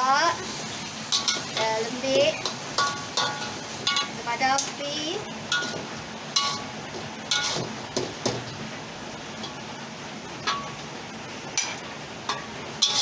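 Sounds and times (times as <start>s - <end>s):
metal spatula clinking on pan: 1.1s - 1.8s, 2.4s - 4.7s, 5.5s - 5.8s, 6.4s - 6.7s, 7.3s - 7.6s, 11.6s - 13.0s.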